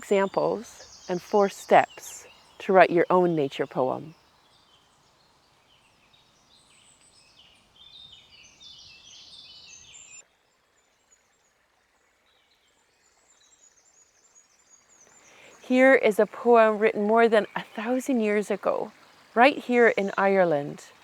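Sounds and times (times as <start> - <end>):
birds chirping and trilling: 0.0 - 10.2, 14.6 - 20.9.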